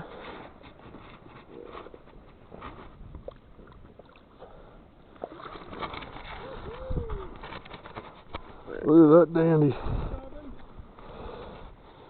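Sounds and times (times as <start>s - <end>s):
water sloshing and splashing: 0.1s - 8.6s.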